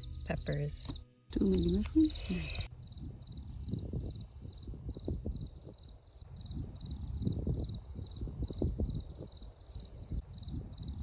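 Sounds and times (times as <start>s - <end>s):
cricket chirping: 0.0s - 11.0s.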